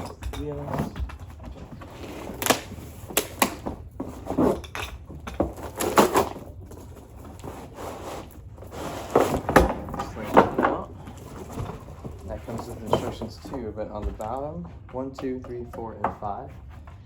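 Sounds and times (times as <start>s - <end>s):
handling rustle: 5.4s - 14.4s.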